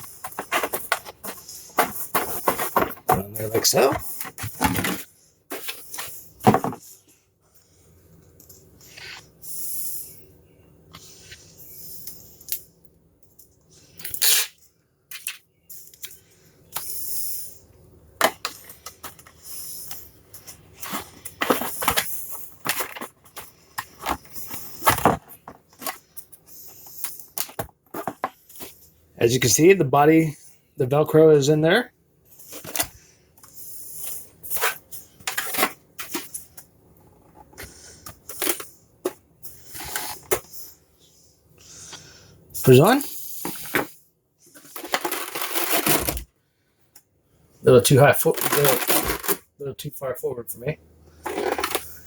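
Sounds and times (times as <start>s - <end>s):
velcro rustling and tearing: 14.0s - 14.6s, 44.8s - 46.2s, 48.2s - 49.4s.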